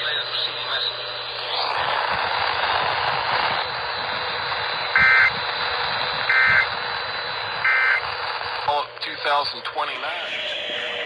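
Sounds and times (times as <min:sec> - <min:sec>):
radio static hiss: 0:09.6 - 0:11.0
two-pitch digital data tones: 0:09.9 - 0:11.0.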